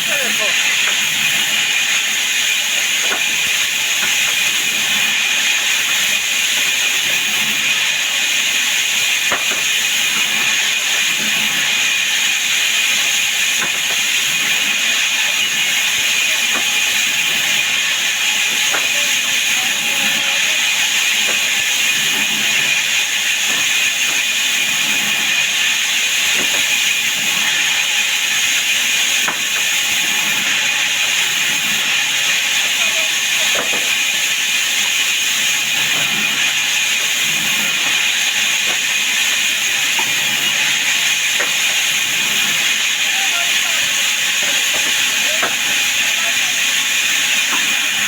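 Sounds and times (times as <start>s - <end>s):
sawmill machinery hiss: 0.0s - 48.0s.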